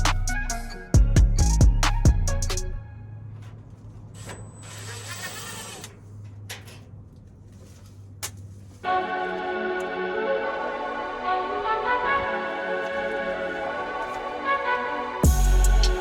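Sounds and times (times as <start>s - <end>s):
background music: 0.0s - 3.3s, 8.9s - 16.0s.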